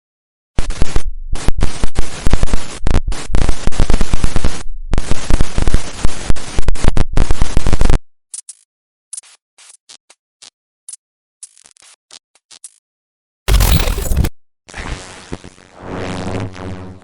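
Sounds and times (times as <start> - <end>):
stuttering digital static: 13.5 - 14.3.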